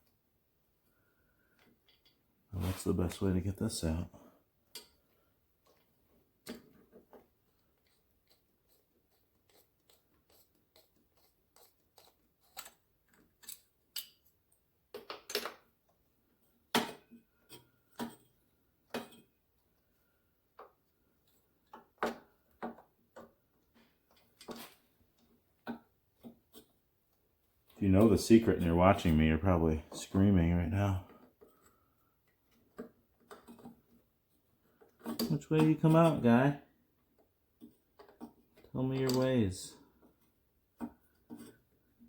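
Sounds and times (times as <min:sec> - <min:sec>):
metal parts clicking and knocking: 0:11.6 - 0:15.6.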